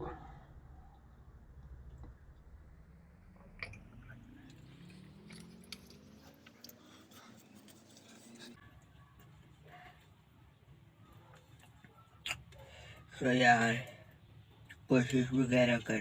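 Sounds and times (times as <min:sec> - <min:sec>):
faint hum rising in pitch: 0:00.0 - 0:08.6.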